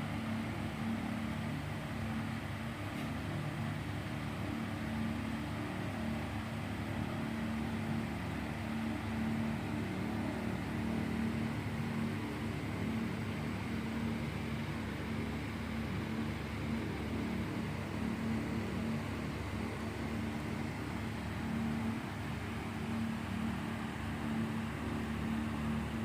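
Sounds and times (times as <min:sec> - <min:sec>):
low mechanical hum: 0:00.0 - 0:26.0.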